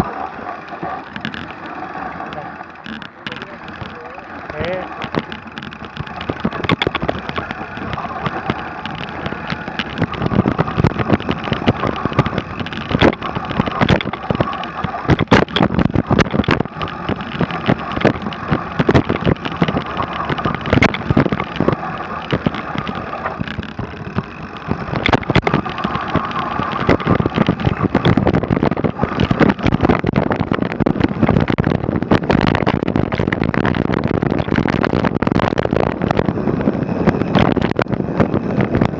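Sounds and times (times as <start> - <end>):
bike clattering over bumps: 0.0 - 38.9
bike tyres rumbling on snow: 0.0 - 38.9
wind: 0.0 - 38.9.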